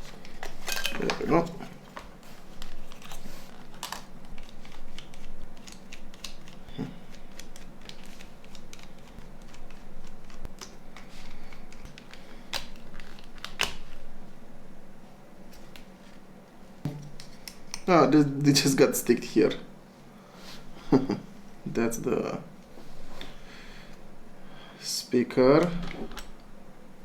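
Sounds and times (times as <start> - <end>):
plastic snapping: 11.7 - 14.0.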